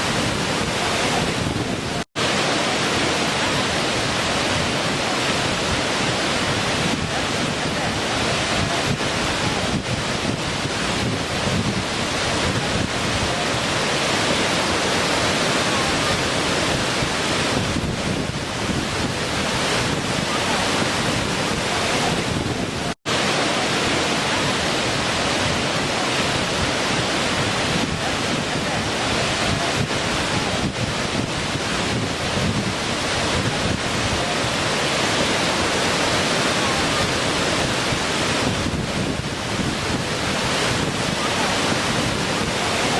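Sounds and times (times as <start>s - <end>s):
waterfall splashing: 0.0s - 42.9s.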